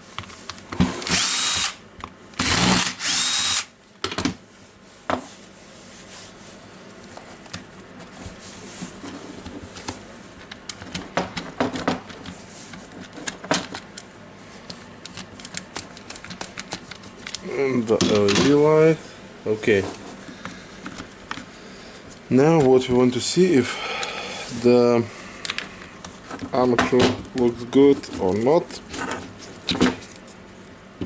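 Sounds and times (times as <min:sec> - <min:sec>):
electric screwdriver running: 0:01.0 - 0:01.8, 0:02.4 - 0:03.7.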